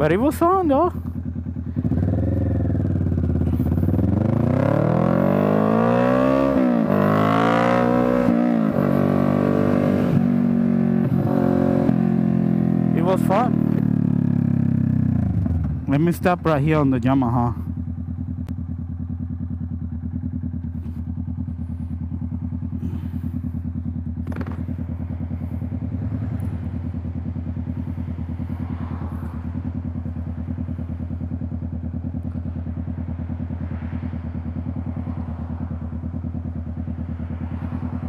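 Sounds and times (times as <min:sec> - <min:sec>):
motorcycle engine idling: 0:00.0 - 0:07.3, 0:08.3 - 0:38.0.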